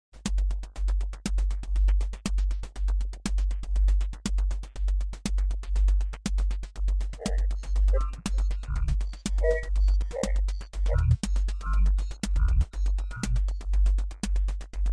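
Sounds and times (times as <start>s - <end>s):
short synthesizer tones: 7.2s - 12.6s
deep bass pulse: 7.2s - 13.5s
electronic music: 7.2s - 13.6s.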